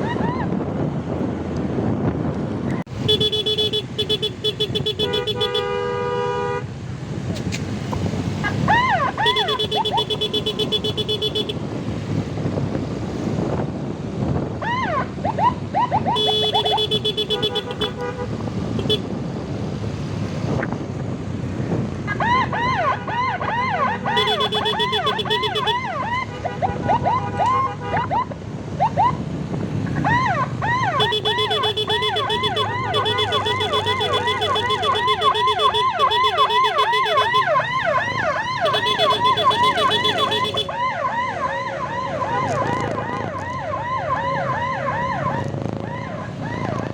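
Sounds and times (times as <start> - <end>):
emergency siren yelping: 0.0 - 0.6, 8.4 - 10.1, 14.5 - 17.0, 22.0 - 46.9
traffic noise: 0.0 - 46.9
horn blasts: 3.0 - 6.8, 9.2 - 11.6, 16.1 - 19.1, 24.1 - 28.1, 30.9 - 37.6, 38.6 - 40.8.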